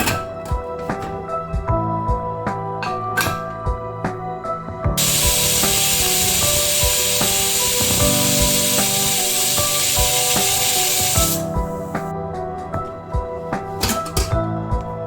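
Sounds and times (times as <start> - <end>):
soft instrumental music: 0.0 - 15.0
loud cooking hiss: 5.0 - 12.1.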